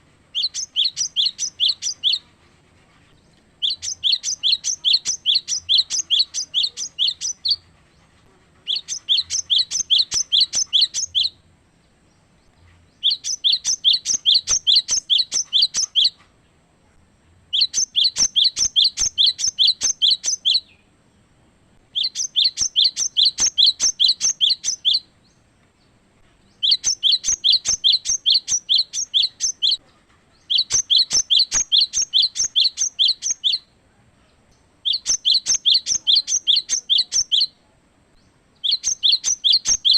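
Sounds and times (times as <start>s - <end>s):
bird singing high sharp phrase: 0.3s - 2.2s, 3.6s - 7.6s, 8.6s - 11.4s, 13.0s - 16.2s, 17.5s - 20.9s, 21.9s - 25.4s, 26.5s - 29.8s, 30.4s - 33.7s, 34.8s - 37.6s, 38.6s - 39.9s.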